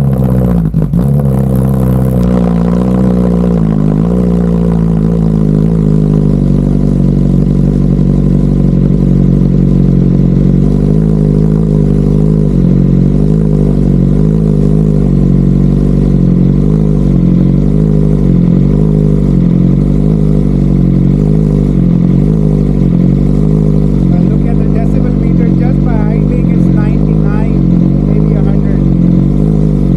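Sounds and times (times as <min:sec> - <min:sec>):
motorcycle engine idling loudly: 0:00.0 - 0:29.9.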